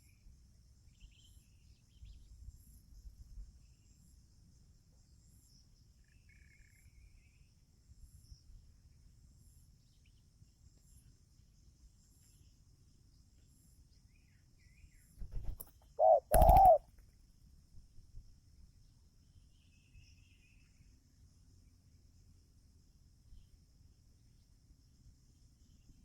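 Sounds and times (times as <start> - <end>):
faint insect chirps: 14.0 - 16.8
dove cooing: 15.3 - 16.8.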